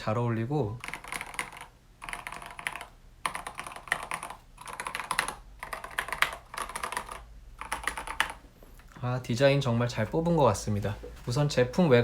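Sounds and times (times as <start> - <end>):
typing on mechanical keyboard: 0.8 - 8.4.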